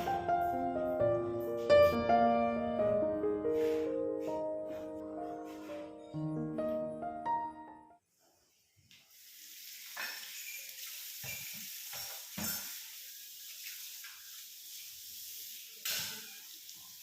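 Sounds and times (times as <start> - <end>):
food sizzling in a pan: 9.0 - 17.0.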